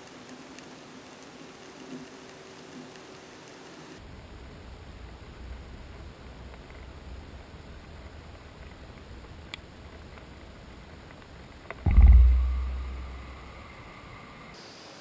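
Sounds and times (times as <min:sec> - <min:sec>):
thunderclap with deep rumble: 0:11.9 - 0:13.6.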